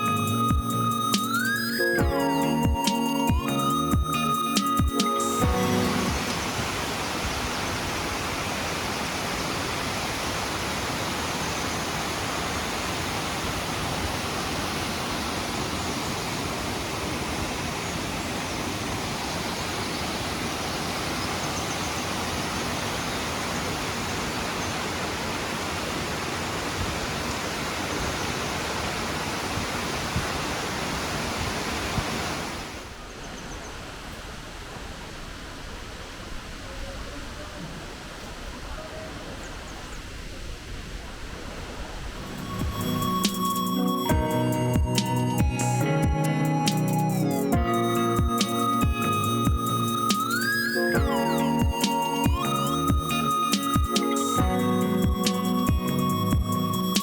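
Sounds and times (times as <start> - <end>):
waterfall rushing: 5.0 - 33.0.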